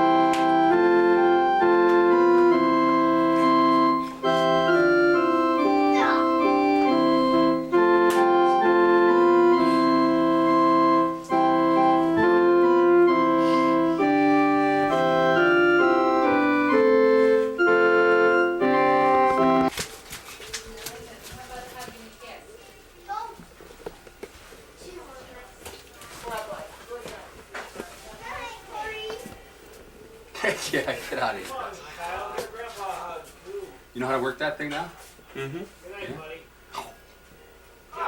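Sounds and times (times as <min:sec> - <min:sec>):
electronic keyboard melody: 0:00.0 - 0:19.7.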